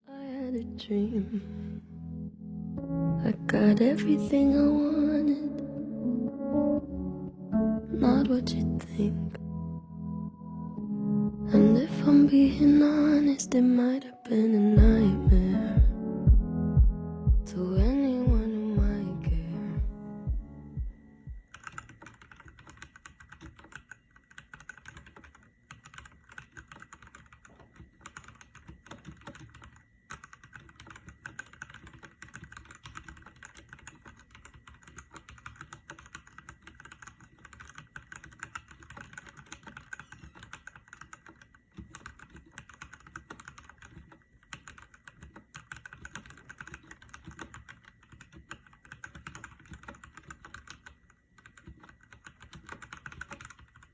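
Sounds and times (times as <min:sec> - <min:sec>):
mechanical keyboard key clicks: 0:21.5 - 0:53.9.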